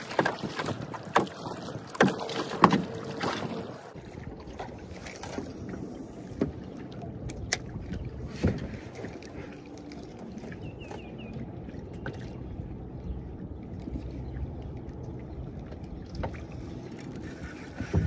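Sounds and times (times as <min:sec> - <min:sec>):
lake water: 0:00.0 - 0:18.0
wind rumble on microphone: 0:04.0 - 0:09.6, 0:10.2 - 0:18.0.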